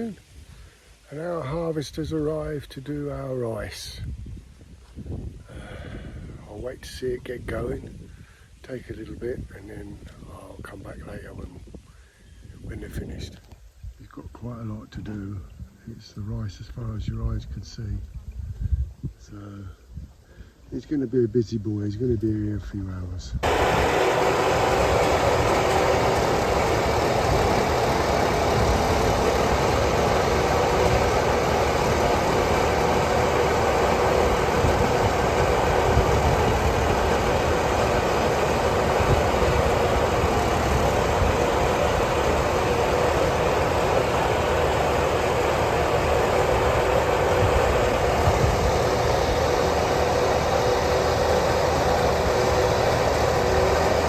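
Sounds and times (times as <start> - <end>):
harvester engine droning: 23.4 - 54.0.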